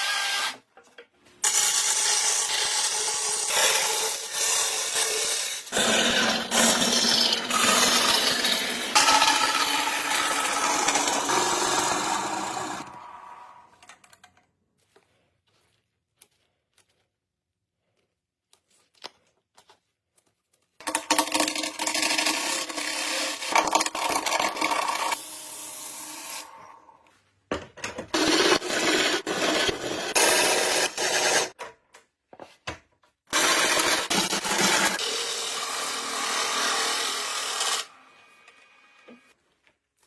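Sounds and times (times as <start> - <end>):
tool scraping and cutting wood: 0.0 - 14.2, 28.0 - 31.6, 33.3 - 39.4.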